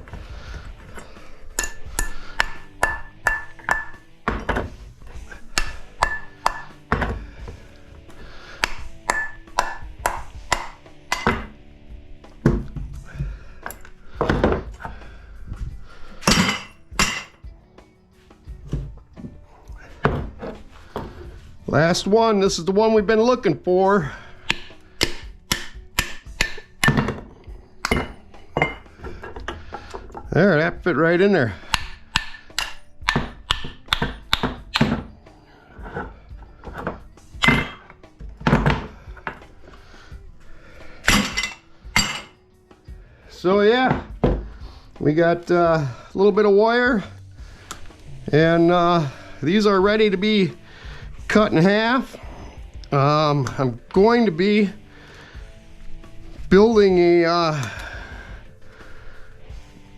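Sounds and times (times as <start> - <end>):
background music: 0.0 - 59.9
metal knocks and clanks: 0.9 - 7.6, 8.6 - 11.6, 24.5 - 30.7.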